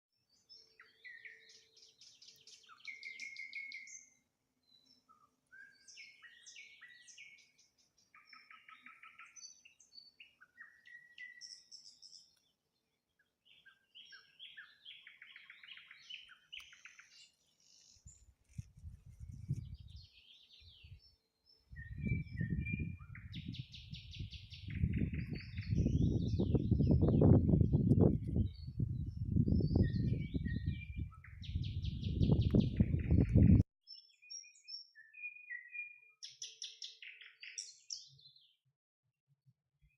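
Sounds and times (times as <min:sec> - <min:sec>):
nightingale singing: 0:00.3 - 0:38.5
low rumbling noise in gusts: 0:21.7 - 0:33.6.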